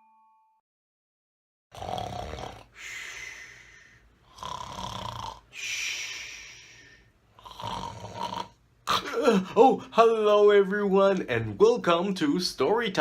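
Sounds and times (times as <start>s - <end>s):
person snoring: 1.7s - 8.6s.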